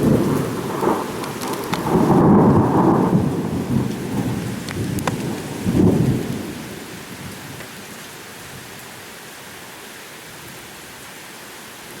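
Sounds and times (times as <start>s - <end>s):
thunder rumbling: 0.0s - 7.6s
steady rain falling: 0.0s - 12.0s.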